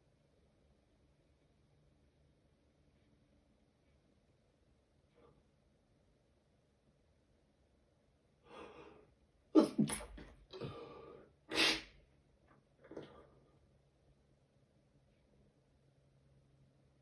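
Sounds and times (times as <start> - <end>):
person breathing: 8.4 - 9.1, 10.5 - 11.8
person sneezing: 9.6 - 10.8, 11.5 - 12.0.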